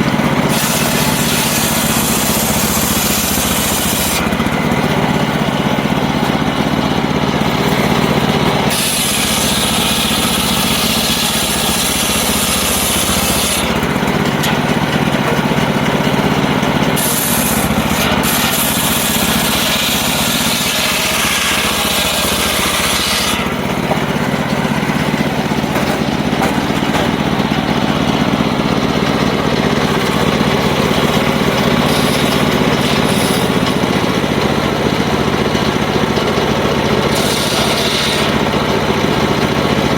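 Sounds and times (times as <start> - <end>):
saw cutting through wood: 0.0 - 39.9
circular saw humming: 0.2 - 39.3.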